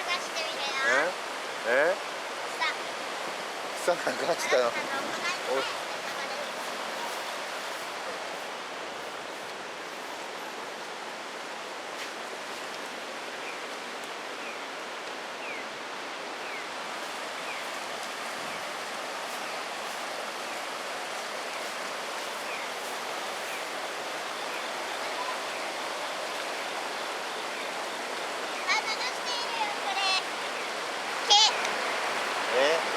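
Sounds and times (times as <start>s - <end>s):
floodwater rushing: 0.0s - 32.9s.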